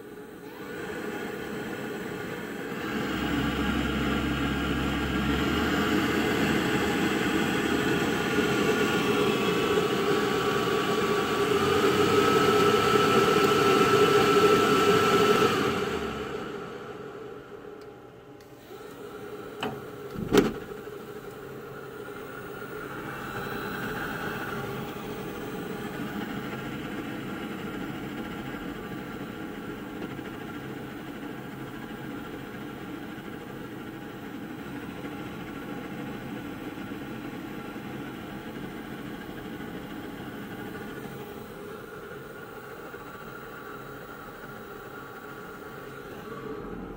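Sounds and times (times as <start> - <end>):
burner blower humming: 0.0 - 32.4.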